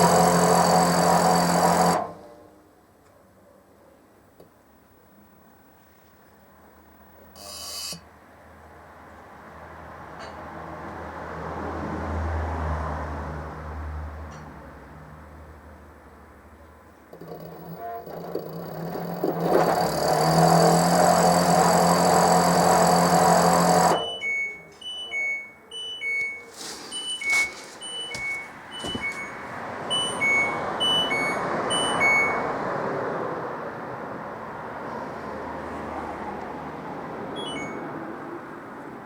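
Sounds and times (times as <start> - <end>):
washing machine whining: 0.0 - 2.5, 17.1 - 32.6, 37.4 - 37.8
control panel beeping: 4.4 - 8.1, 17.2 - 32.5, 37.4 - 37.9.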